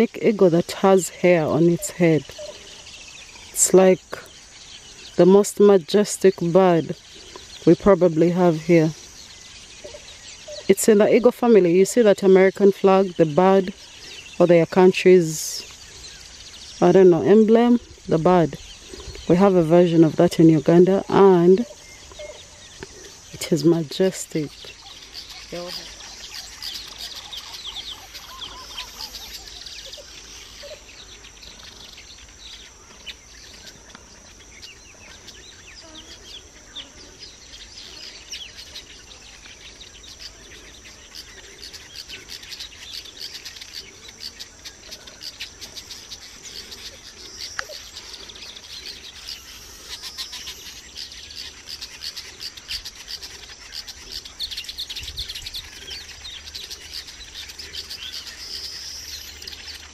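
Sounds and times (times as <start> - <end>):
high insect drone: 0.0 - 59.9
small birds chirping: 0.0 - 59.9.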